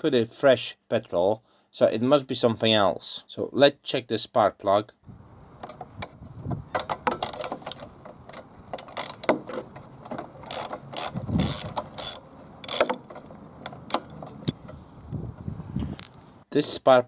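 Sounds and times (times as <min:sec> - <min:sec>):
metal rattle: 0:05.2 - 0:16.4
hand tool clinking on metal: 0:06.7 - 0:14.6, 0:15.9 - 0:16.4.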